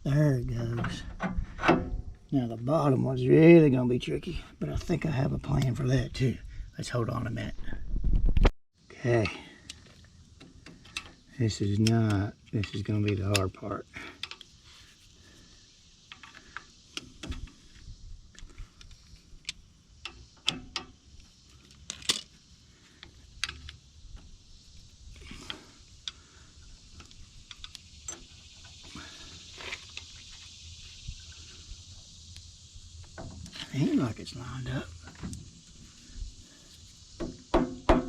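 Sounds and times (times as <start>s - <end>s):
louder knocks: 37.2s - 38.0s.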